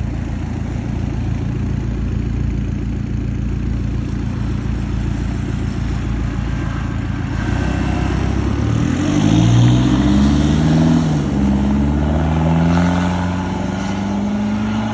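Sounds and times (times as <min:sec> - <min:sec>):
truck engine revving: 0:05.3 - 0:14.9.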